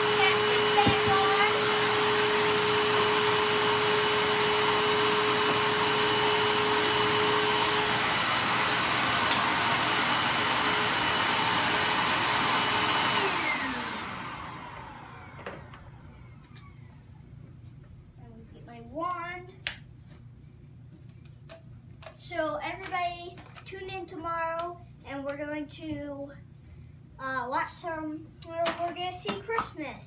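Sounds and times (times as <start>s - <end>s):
vacuum cleaner running: 0.0s - 17.0s.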